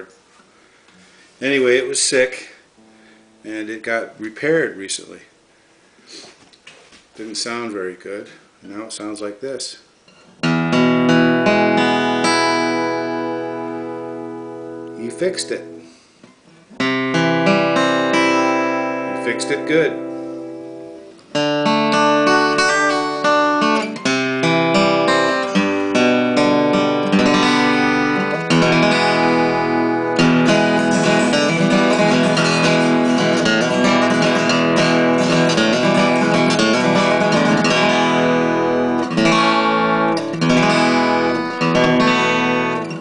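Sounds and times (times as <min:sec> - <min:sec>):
acoustic guitar playing: 0:02.7 - 0:03.9, 0:10.1 - 0:43.0.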